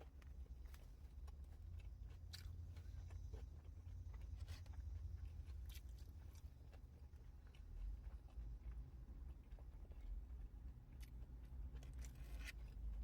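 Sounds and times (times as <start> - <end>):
chewing and mouth sounds: 0.0 - 13.0.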